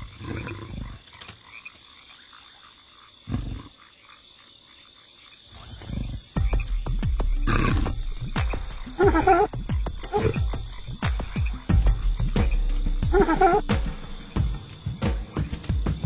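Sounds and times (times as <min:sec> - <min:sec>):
deep belching and retching: 0:07.4 - 0:08.2.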